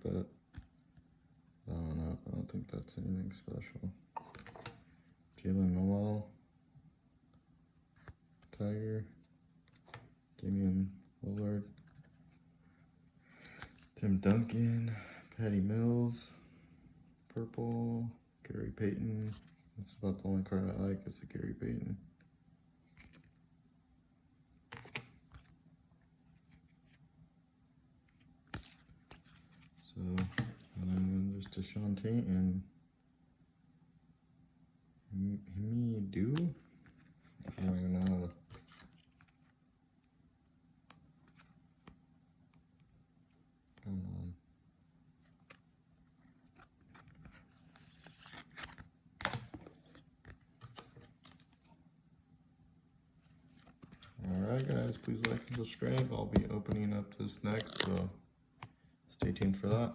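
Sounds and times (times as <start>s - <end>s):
low steady hum: 0.0s - 59.9s
trading cards clicking and rustling: 4.2s - 4.9s, 13.4s - 14.8s, 24.7s - 25.6s, 28.2s - 31.6s, 36.3s - 39.4s, 46.4s - 51.7s, 53.3s - 59.8s.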